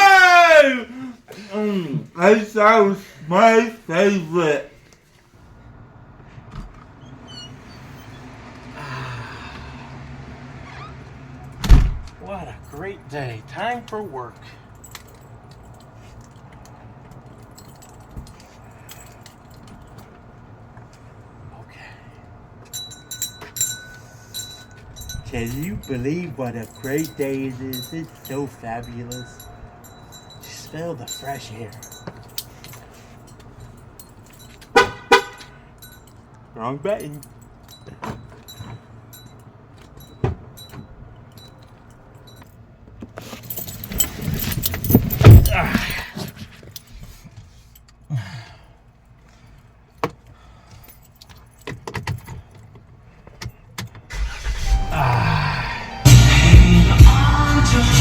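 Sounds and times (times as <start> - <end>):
keys jingling: 13.8 - 21.3, 22.6 - 48.1, 49.0 - 55.2.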